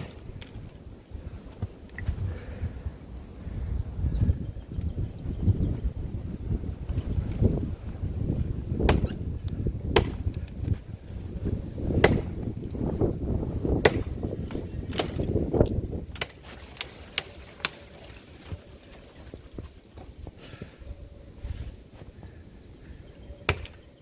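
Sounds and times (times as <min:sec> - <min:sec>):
axe chopping wood: 0:08.8 - 0:09.2, 0:09.9 - 0:10.4, 0:11.9 - 0:12.5, 0:13.7 - 0:15.4, 0:23.4 - 0:23.8.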